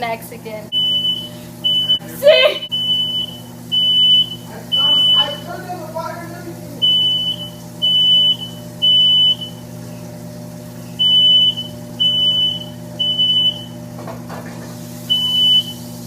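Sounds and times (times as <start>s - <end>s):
smoke alarm beeping: 0.7s - 6.2s, 6.8s - 9.8s, 10.7s - 13.8s, 15.0s - 16.0s.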